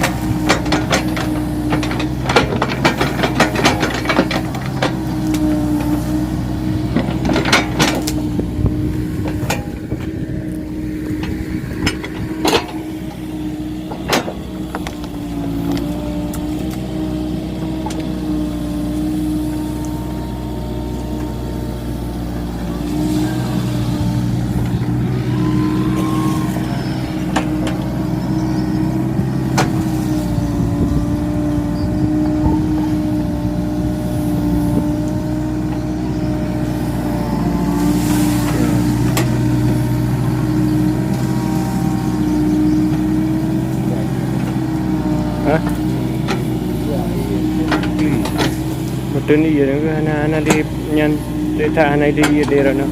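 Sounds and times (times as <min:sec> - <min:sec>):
sharp metal knocks and clanks: 0:00.0 - 0:05.1
excavator diesel engine running: 0:00.0 - 0:52.9.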